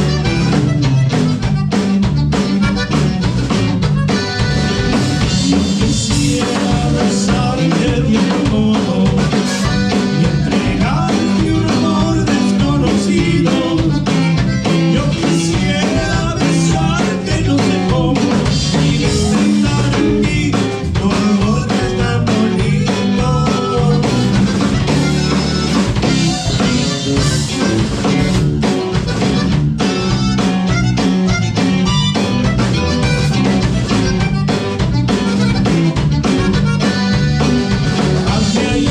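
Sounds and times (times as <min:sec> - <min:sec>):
live band playing: 0:00.0 - 0:38.9.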